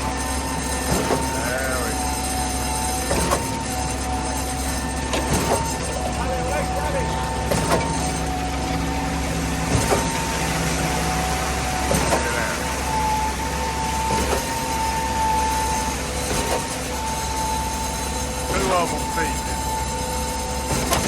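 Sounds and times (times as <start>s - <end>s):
diesel engine running under load: 0.0s - 21.0s.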